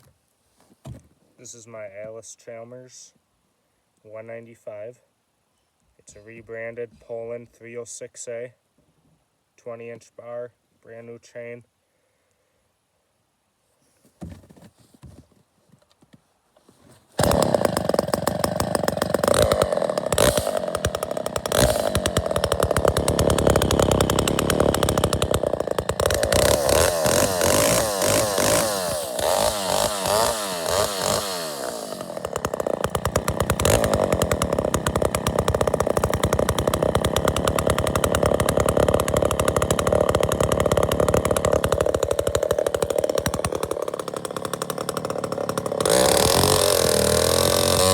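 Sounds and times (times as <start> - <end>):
chainsaw running: 17.2 - 47.9.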